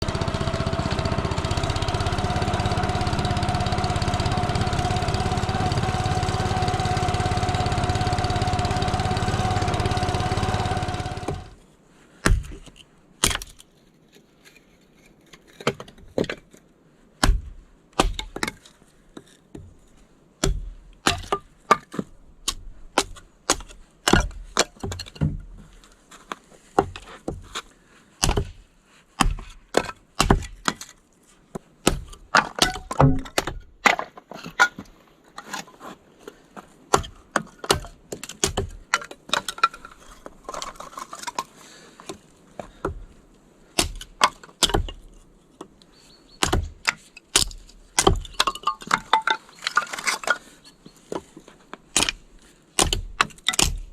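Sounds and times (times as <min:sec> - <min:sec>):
small engine running: 0:00.0 - 0:11.6
sharp knocks: 0:31.9 - 0:33.6.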